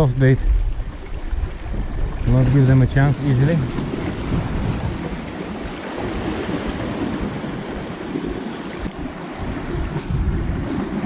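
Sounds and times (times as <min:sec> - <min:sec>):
waves washing against rocks: 0:00.0 - 0:11.0
wind buffeting microphone: 0:00.0 - 0:11.0.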